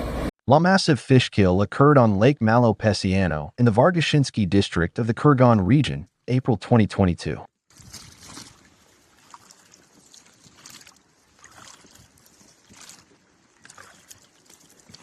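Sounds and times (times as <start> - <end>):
small splashes: 7.7 - 15.0
water lapping and sloshing: 7.7 - 15.0.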